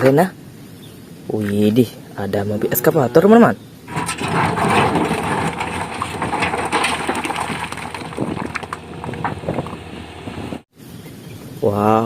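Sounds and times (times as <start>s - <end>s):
plastic toy cars rattling: 3.9s - 9.6s.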